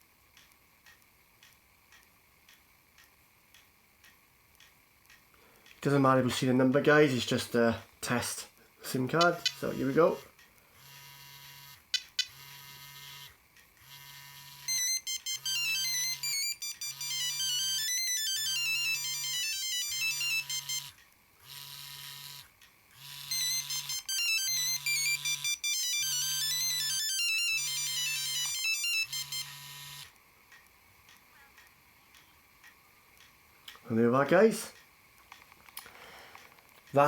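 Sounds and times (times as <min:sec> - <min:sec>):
phone ringtone beeps: 0:14.6 - 0:21.0, 0:23.0 - 0:30.1.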